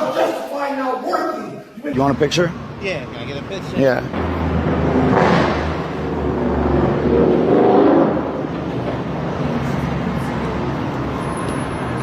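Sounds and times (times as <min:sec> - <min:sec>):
vehicle engine humming: 0:02.0 - 0:12.0.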